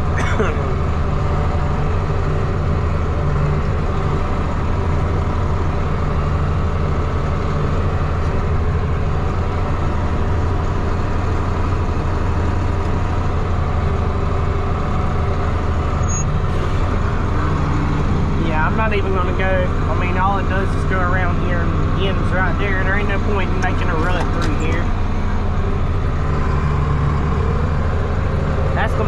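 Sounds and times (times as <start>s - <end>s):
tractor engine running: 0.0s - 29.0s.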